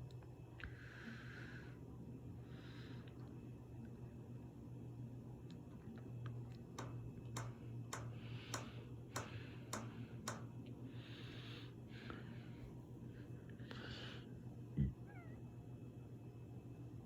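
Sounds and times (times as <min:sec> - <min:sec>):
ceiling fan motor hum: 0:00.0 - 0:17.0
fan ticking: 0:06.3 - 0:10.8.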